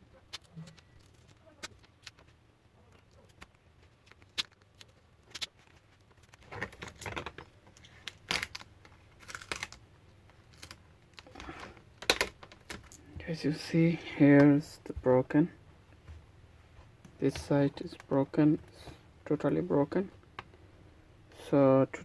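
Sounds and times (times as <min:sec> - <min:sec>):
plastic clicks: 0:10.5 - 0:13.0.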